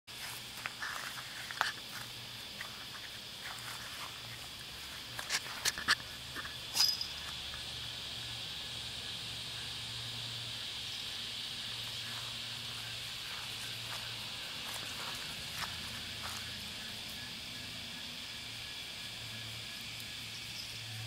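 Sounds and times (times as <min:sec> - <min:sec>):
insects chorus: 0:00.1 - 0:21.0.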